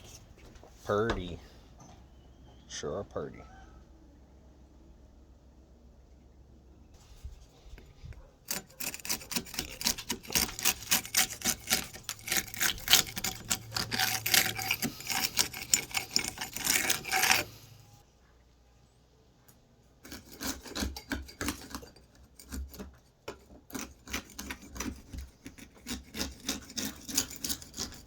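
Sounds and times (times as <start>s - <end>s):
paintbrush scrubbing rough wood: 8.5s - 17.6s.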